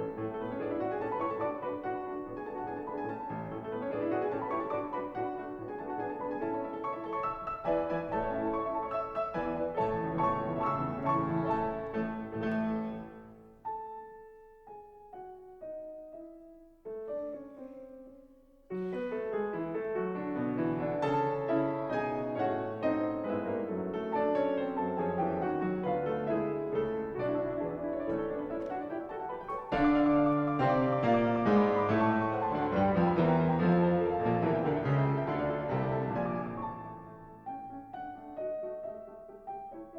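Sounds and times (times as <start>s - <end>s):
piano music: 0.0s - 39.9s.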